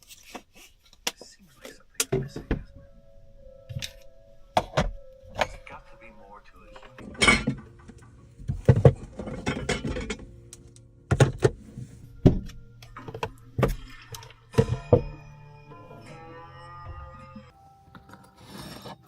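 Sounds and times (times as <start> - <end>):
objects knocking and clattering: 3.7 - 5.8, 6.7 - 15.3.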